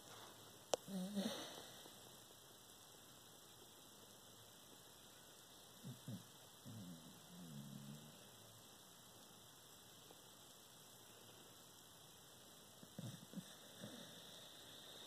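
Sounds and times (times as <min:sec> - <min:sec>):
dog making sleep sounds: 0:00.0 - 0:02.0, 0:05.7 - 0:08.4, 0:12.8 - 0:15.0
steady low hum: 0:00.0 - 0:15.0.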